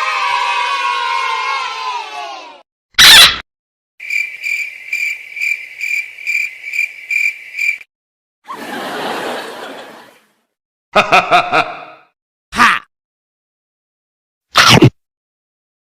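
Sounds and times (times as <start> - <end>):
cricket chirping: 4.0 - 7.9.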